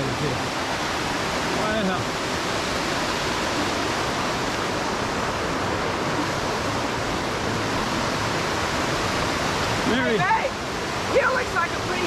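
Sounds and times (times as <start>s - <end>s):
roar of falling white water: 0.0s - 12.0s.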